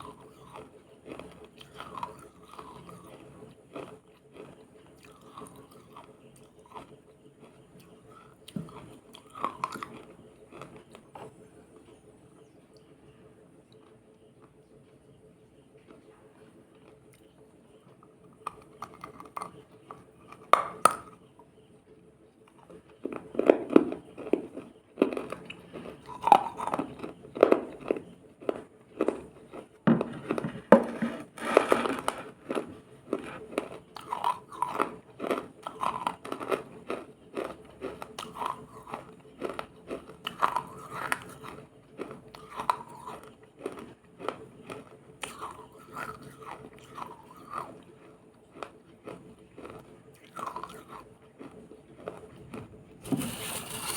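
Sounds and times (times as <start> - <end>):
chewing crunchy wet food: 0.0 - 53.9.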